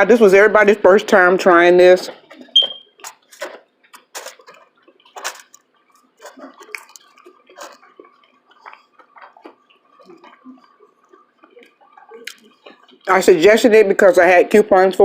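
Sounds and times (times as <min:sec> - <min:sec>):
person chewing and lip smacking: 0:02.1 - 0:13.1.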